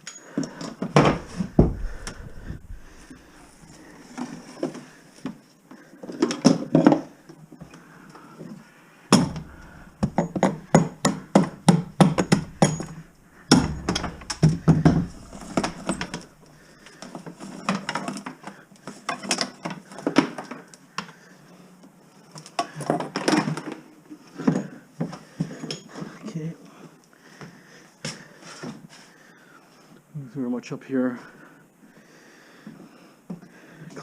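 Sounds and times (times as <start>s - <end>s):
hard objects knocking and clinking: 0.6s - 3.8s, 9.1s - 16.8s.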